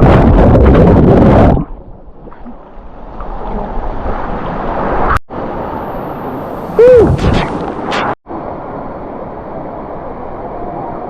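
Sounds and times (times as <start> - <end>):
wind on microphone: 0.0 - 8.2.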